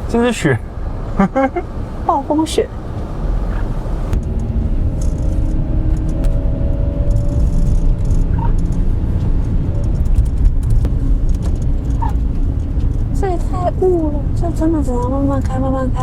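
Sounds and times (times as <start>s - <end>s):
car engine and tyres rumble: 0.0s - 16.0s
light clicks and rattles: 4.2s - 6.4s, 7.0s - 13.8s.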